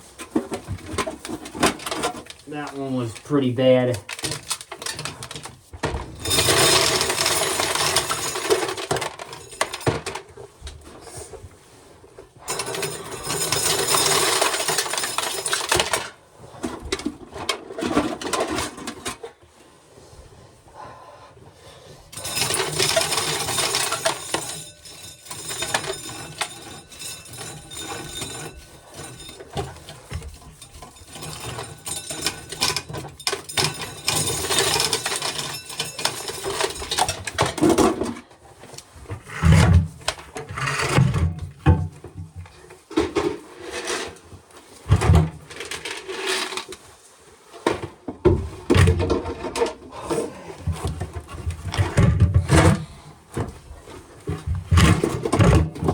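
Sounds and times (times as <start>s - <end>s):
corn sheller metallic clatter: 0.3s - 10.2s, 12.4s - 16.2s, 22.2s - 38.2s
kernels rattling: 6.2s - 10.0s, 12.5s - 16.1s, 22.2s - 38.0s.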